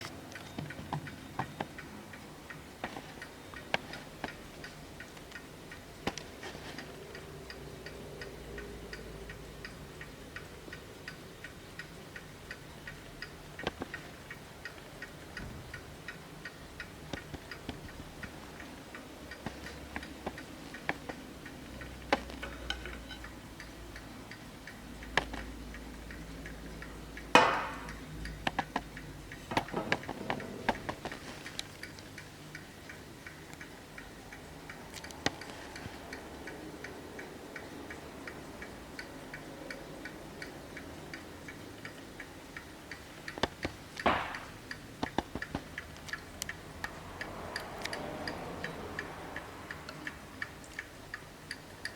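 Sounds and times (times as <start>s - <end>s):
mantel clock ticking: 0.0s - 51.9s
sharp clock strike: 27.2s - 30.9s, 44.0s - 45.9s.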